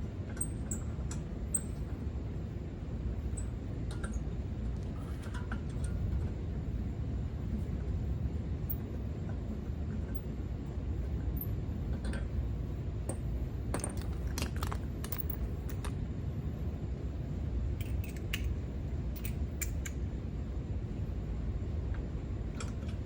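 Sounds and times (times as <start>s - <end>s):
steady low rumble: 0.0s - 23.0s
metallic clicks of lug nuts and tools: 17.8s - 18.5s, 19.1s - 20.0s.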